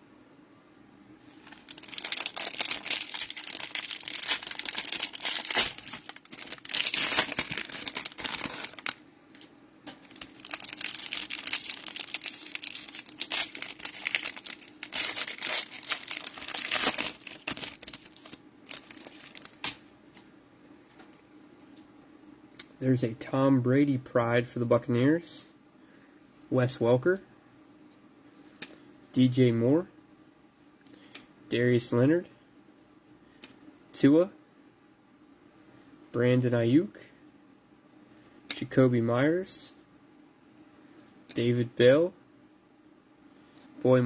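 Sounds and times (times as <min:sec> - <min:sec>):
cellophane wrapper crinkling: 0:01.4 - 0:09.0, 0:10.0 - 0:19.8.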